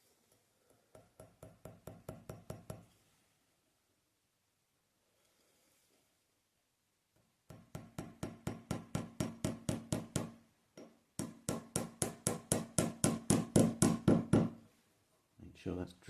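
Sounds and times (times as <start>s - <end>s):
hammer tapping nail into wood: 7.5s - 14.6s.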